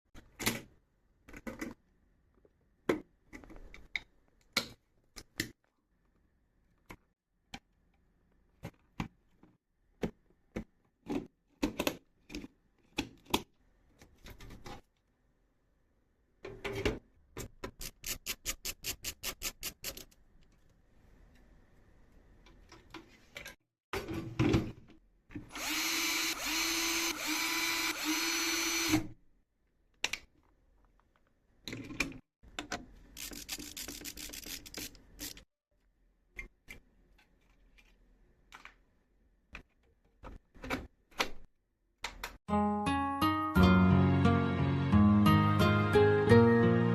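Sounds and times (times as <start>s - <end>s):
electric screwdriver whirring: 25.5s - 29.1s.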